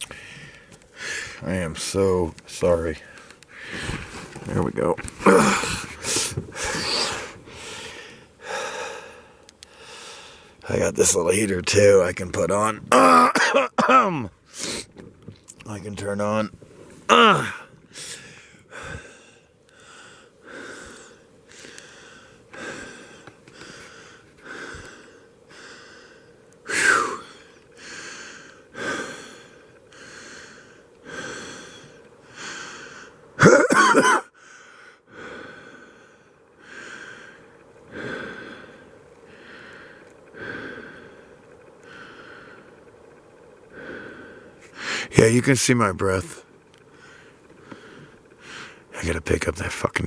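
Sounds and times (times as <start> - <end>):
man breathing hard: 0.0 - 1.4, 3.0 - 4.4, 5.2 - 10.6, 17.2 - 33.4, 34.3 - 45.2, 46.8 - 48.9.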